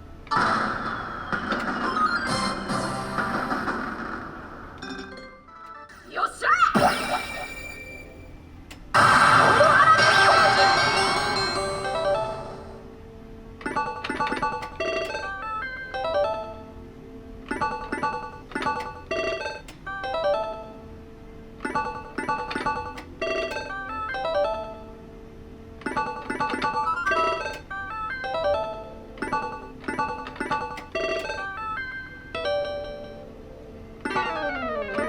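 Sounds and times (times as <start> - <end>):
electronic chime tones: 6.8 - 8.4, 34.0 - 35.0.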